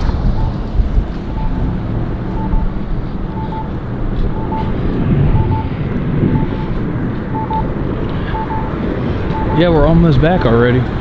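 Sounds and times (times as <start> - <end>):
wind buffeting microphone: 0.0 - 11.0
faint short beeps: 1.3 - 1.7, 2.3 - 3.7, 4.3 - 4.7, 5.3 - 5.7, 6.3 - 6.7, 8.3 - 8.7, 9.3 - 9.8.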